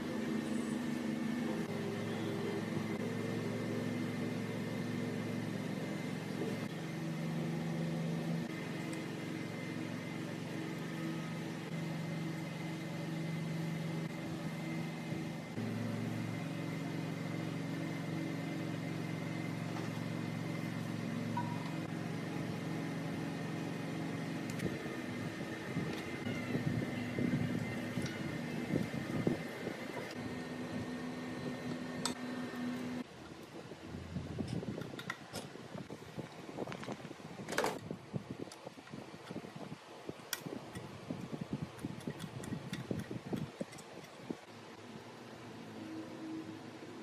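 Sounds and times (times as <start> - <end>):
motor humming: 0.0 - 33.1.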